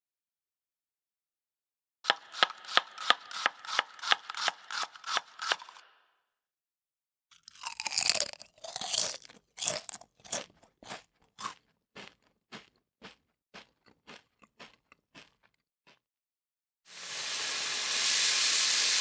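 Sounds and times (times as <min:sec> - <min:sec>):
crunchy food being chewed: 0:07.3 - 0:16.1.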